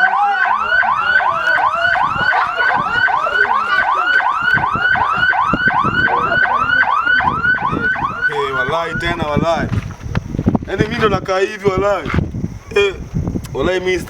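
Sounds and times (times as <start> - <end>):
siren yelping: 0.0 - 9.4.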